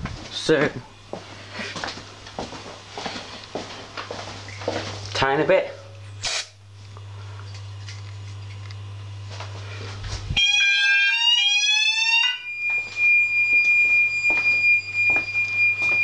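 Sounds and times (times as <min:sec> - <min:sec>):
low steady hum: 0:00.0 - 0:16.0
fire alarm sounder tone: 0:10.3 - 0:16.0.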